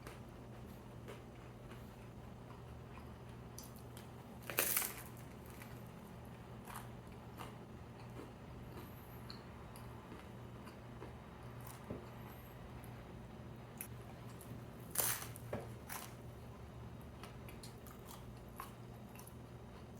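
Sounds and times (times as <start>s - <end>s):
soft chewing: 0.0s - 13.0s, 13.8s - 19.9s
faint low hum: 0.0s - 19.9s
crunchy bite: 4.4s - 5.9s, 13.8s - 16.2s.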